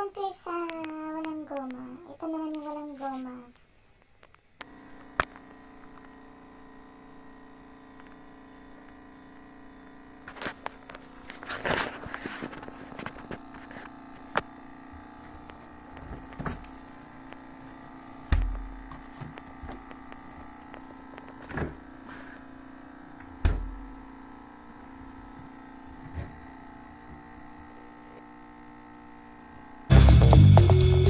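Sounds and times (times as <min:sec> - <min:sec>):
refrigerator humming: 0:04.6 - 0:31.0.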